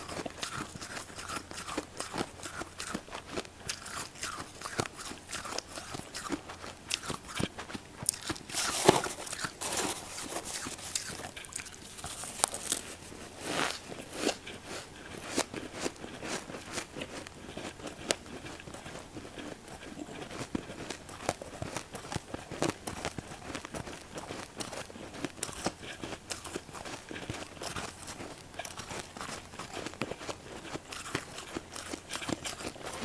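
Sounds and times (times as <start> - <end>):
chewing crunchy frost: 0.0 - 33.0.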